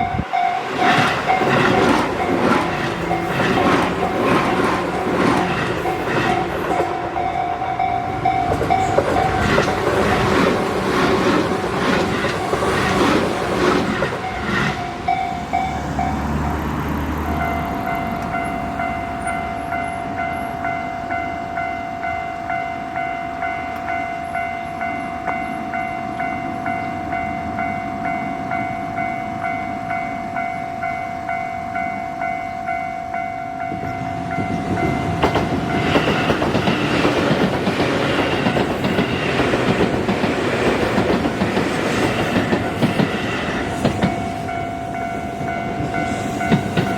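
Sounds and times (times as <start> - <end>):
level crossing bell ringing: 0.0 - 3.4
train passing: 0.0 - 46.9
wheels clattering over rail joints: 0.6 - 18.5, 33.8 - 44.6.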